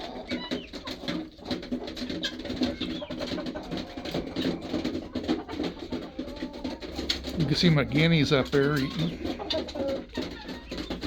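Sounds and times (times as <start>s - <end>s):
chickens clucking softly: 0.0s - 11.0s.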